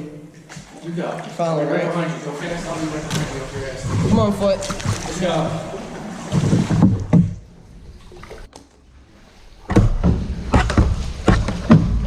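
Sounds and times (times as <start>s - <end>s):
water sounds: 0.0s - 12.0s
paddle knocking kayak hull: 2.5s - 8.5s, 9.6s - 12.0s.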